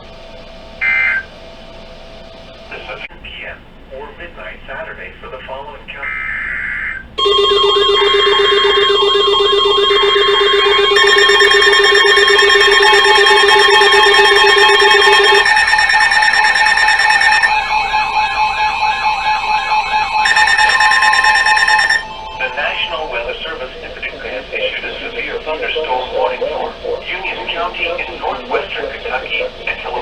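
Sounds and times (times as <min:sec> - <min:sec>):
warbling alarm: 0:00.0 - 0:03.0, 0:06.2 - 0:30.0
steady alert tones: 0:07.2 - 0:25.6.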